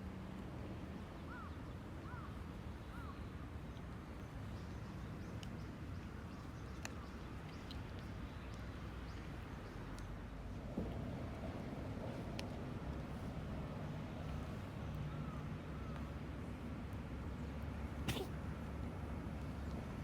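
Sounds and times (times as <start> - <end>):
faint clicks: 6.7 - 9.3.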